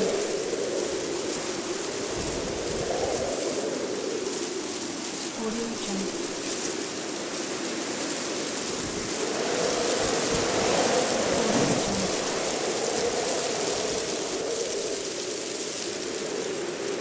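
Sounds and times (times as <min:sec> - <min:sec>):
gusty wind howling: 0:00.0 - 0:05.3, 0:08.6 - 0:15.3
rustling leaves: 0:00.0 - 0:17.0.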